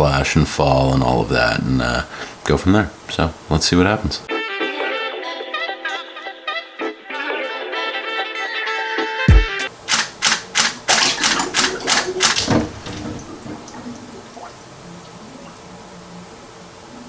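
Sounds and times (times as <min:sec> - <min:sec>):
camera shutter clicks: 0:09.7 - 0:13.1.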